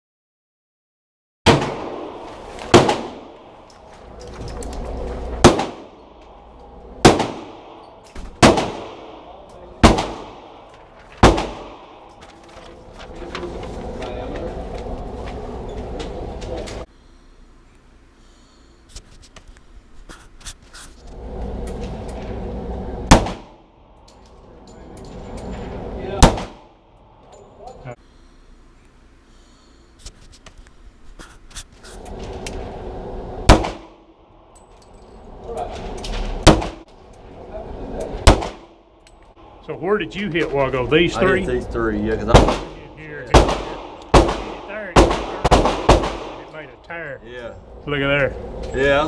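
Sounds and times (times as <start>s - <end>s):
pistol shots echoing indoors: 1.5s - 3.6s, 5.4s - 6.2s, 6.9s - 12.2s, 23.0s - 23.6s, 26.2s - 26.7s, 33.4s - 34.0s, 36.4s - 36.9s, 38.2s - 38.7s, 42.2s - 46.6s
low steady rumble: 1.5s - 18.9s, 21.0s - 30.0s, 30.6s - 49.0s.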